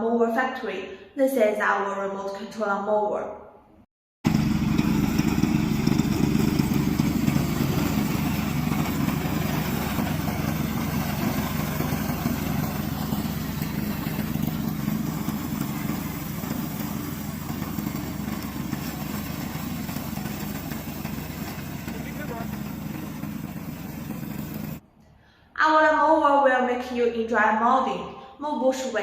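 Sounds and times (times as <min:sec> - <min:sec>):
lawn mower petrol engine running: 0:04.3 - 0:24.8.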